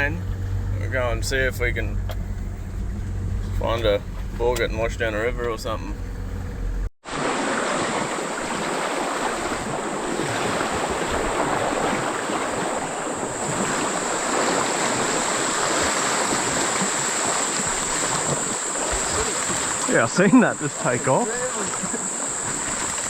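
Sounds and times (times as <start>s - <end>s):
river water rushing: 7.0s - 23.0s
high insect drone: 11.8s - 23.0s.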